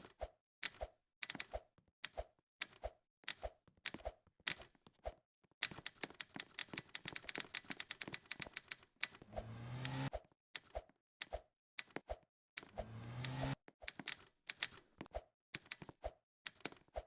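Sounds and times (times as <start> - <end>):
typewriter keys clacking: 5.6 - 8.8
rising mechanical whirr with hum: 9.3 - 10.1, 12.8 - 13.6.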